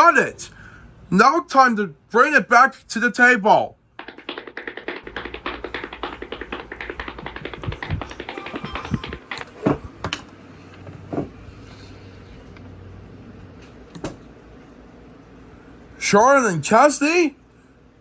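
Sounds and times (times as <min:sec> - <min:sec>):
light taps and clicks: 0:04.0 - 0:09.5
separate knocks: 0:04.0 - 0:09.8.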